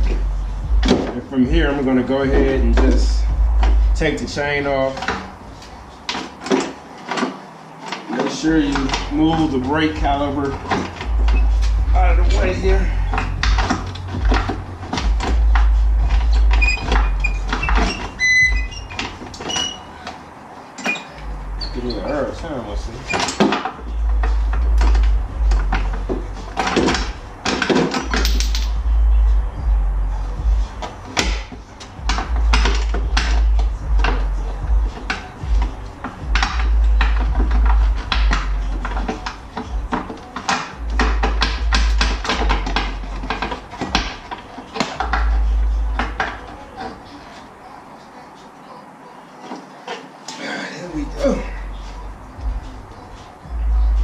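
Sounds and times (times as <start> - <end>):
heavy low rumble: 0.0 - 6.0, 8.5 - 19.3, 21.2 - 23.1, 28.2 - 39.9
metal clinks and knocks: 23.0 - 28.9
metallic clinks of motorcycle chain: 28.0 - 28.8.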